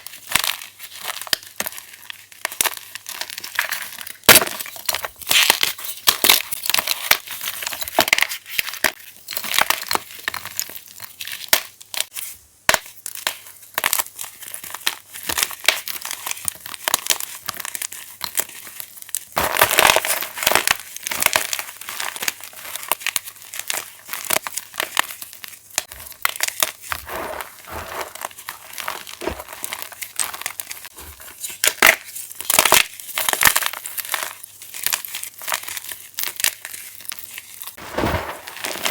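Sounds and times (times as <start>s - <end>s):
chalk being crushed: 25.8s - 34.4s.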